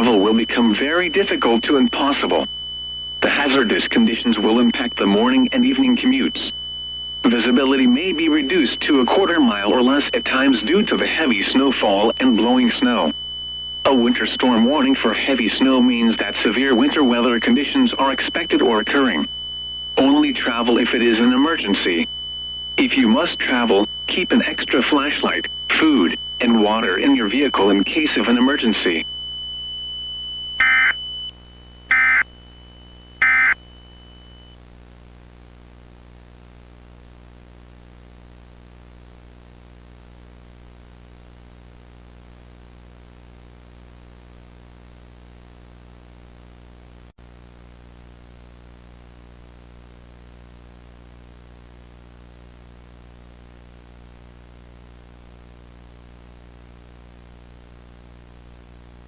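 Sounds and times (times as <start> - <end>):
low hum and hiss: 0.0 - 34.5
steady high tone: 7.2 - 13.1, 20.0 - 22.1, 30.6 - 34.4
harsh digital screeches: 33.2 - 33.6.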